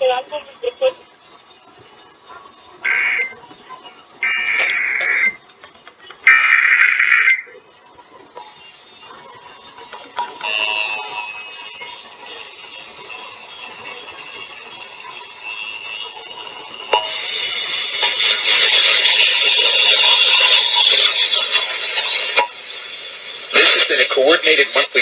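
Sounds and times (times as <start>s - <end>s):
harsh alert signal over radio: 2.8s - 3.4s, 4.2s - 5.4s, 6.2s - 7.6s.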